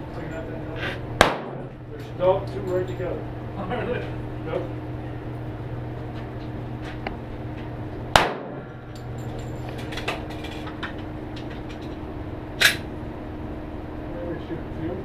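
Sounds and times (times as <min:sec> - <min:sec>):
pistol shots: 0:01.2 - 0:01.7, 0:08.2 - 0:08.6.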